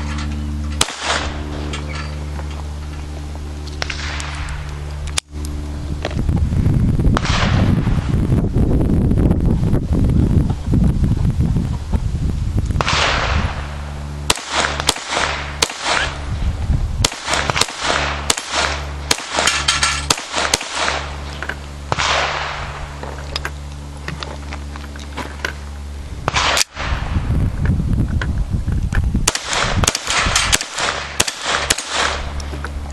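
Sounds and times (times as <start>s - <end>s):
steady low rumble: 0.0s - 32.9s
pistol shots: 0.8s - 1.6s, 14.3s - 16.2s, 17.0s - 21.3s, 21.9s - 22.8s, 26.3s - 27.0s, 29.2s - 32.4s.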